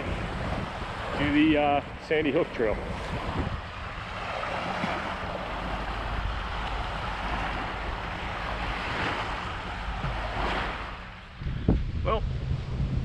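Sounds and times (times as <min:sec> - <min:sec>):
waves washing on shore: 0:00.0 - 0:13.0
wind buffeting microphone: 0:00.0 - 0:13.0.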